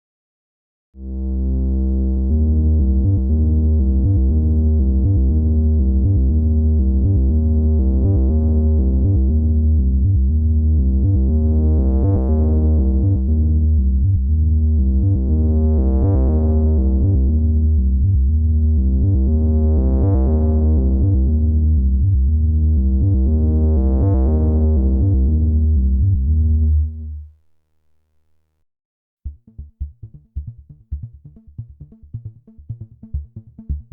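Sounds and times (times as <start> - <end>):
pulsing synthesizer bass: 1.0 - 27.3.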